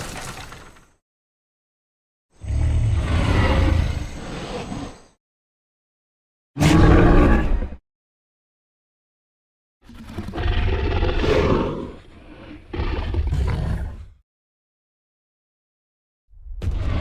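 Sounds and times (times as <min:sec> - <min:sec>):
deep monster roar: 0:02.4 - 0:04.3, 0:06.6 - 0:07.8, 0:10.3 - 0:14.2.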